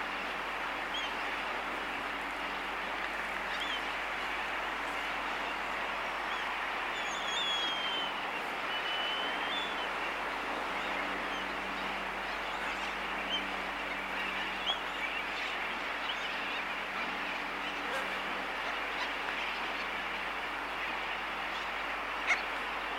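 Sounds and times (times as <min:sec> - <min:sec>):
faint low aircraft hum: 0:00.0 - 0:22.9
thin gliding whistle calls: 0:05.3 - 0:19.9.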